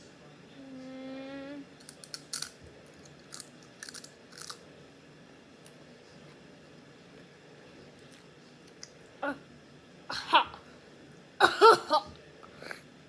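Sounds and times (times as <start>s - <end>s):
person humming: 0.7s - 1.6s
chips crunching while chewed: 1.8s - 4.6s.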